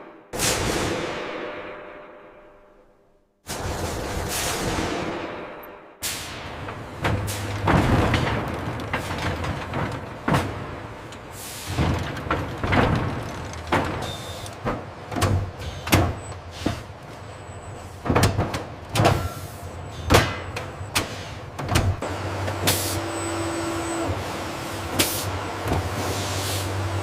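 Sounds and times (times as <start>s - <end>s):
machinery clanks and knocks: 3.5s - 22.9s.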